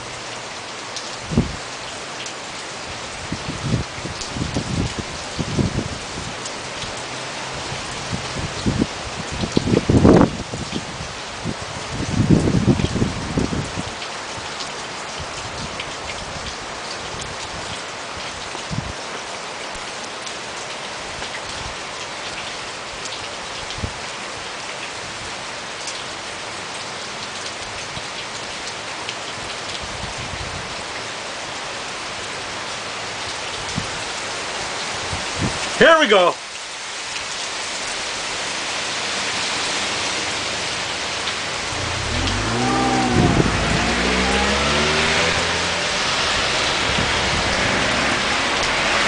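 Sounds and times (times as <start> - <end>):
raindrops hitting close by: 0.0 - 49.0
steady rain: 0.0 - 49.0
low rumble: 41.6 - 48.6.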